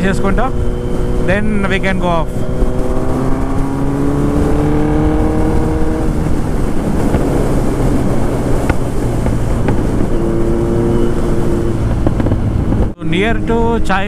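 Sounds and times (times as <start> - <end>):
motorcycle engine cruising: 0.0 - 14.0
rushing wind noise: 0.0 - 14.0.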